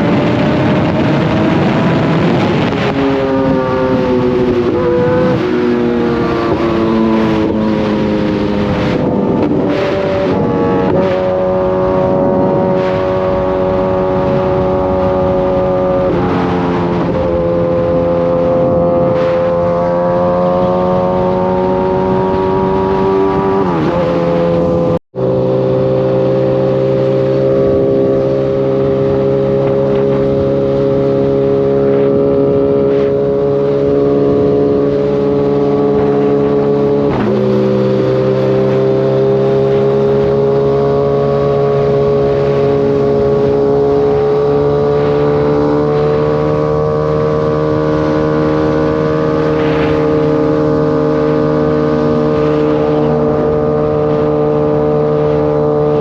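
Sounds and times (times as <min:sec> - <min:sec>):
motorcycle engine running: 0:24.2 - 0:56.0.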